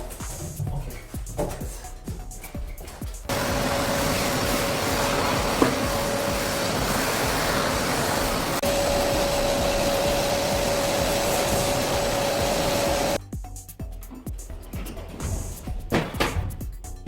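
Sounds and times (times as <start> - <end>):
machine whirring with whine: 3.3 - 13.2.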